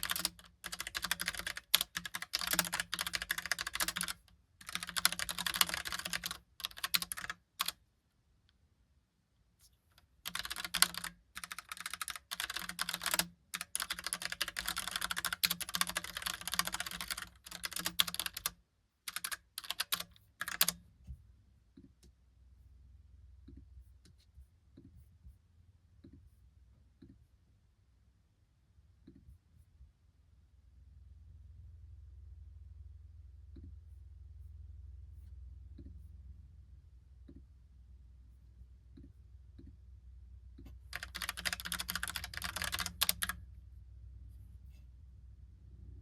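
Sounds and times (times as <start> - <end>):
mechanical keyboard typing: 0.0 - 7.8, 10.2 - 20.8, 40.9 - 43.4
faint low hum: 0.0 - 46.0.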